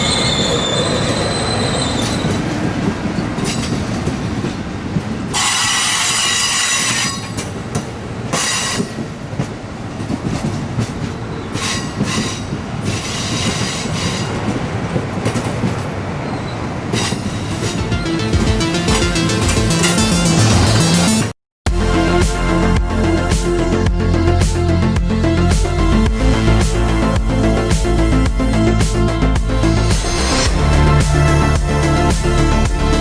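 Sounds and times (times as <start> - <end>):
wheels squealing against rails: 0.0 - 21.2
train rolling past: 0.0 - 33.0.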